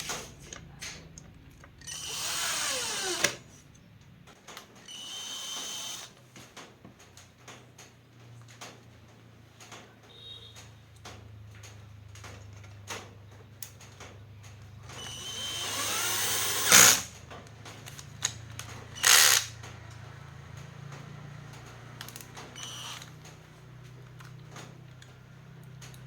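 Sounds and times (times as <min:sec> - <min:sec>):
small power tool running: 0:01.8 - 0:03.4, 0:04.8 - 0:06.1, 0:15.0 - 0:17.1, 0:19.0 - 0:19.6, 0:22.6 - 0:23.2.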